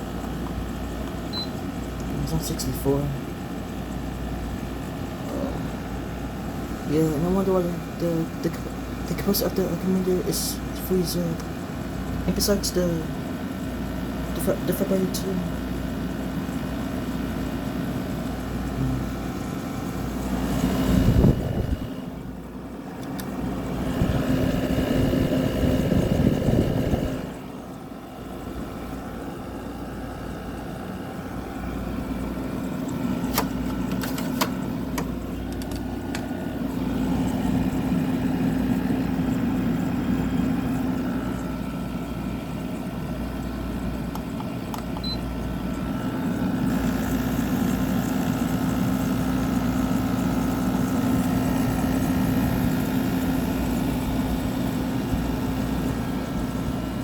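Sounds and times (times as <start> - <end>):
air conditioner humming: 0.0 - 57.0
sharp clicks: 23.0 - 23.4, 44.1 - 45.1.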